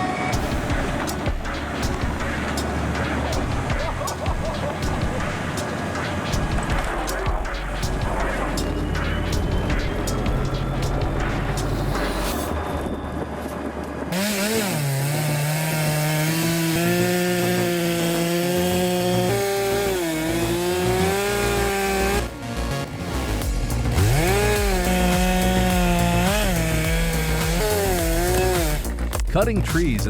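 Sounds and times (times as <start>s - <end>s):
chainsaw cutting wood: 14.1s - 22.3s, 23.4s - 29.1s.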